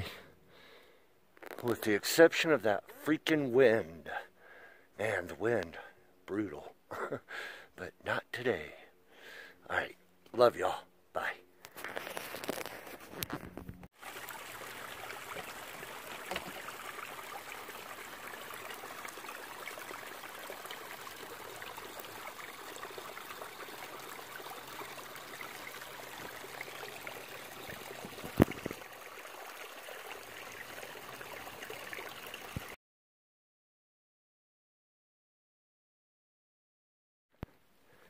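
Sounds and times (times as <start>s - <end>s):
stream trickling: 1.4s - 5.9s, 11.6s - 32.8s.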